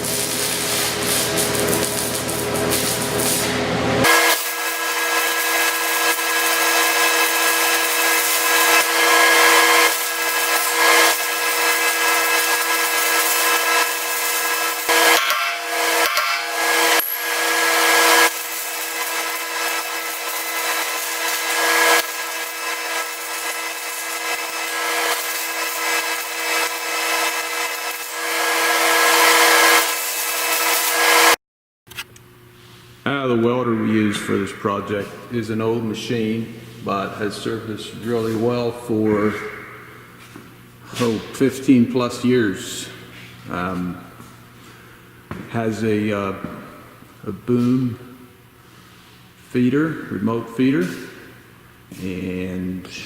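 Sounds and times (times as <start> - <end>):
power tool grinding steel: 0.0 - 31.4.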